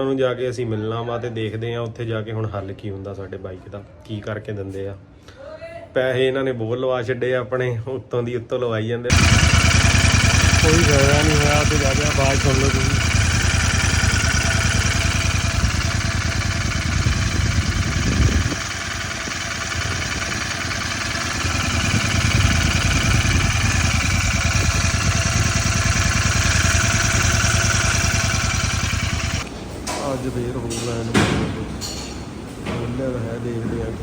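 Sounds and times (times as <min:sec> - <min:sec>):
motorcycle engine ticking: 0:09.1 - 0:29.5.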